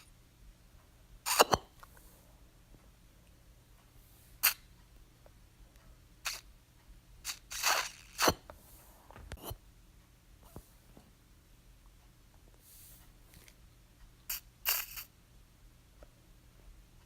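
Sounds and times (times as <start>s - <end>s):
nasal aspirator sucking: 1.3s - 1.6s, 4.4s - 4.6s, 6.3s - 6.5s, 7.3s - 8.4s, 14.3s - 15.1s.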